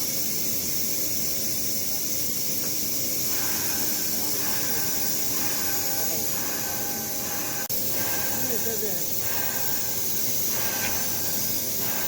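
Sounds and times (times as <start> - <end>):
industrial hiss and hum: 0.0 - 12.0
faint workers' voices: 3.3 - 12.0.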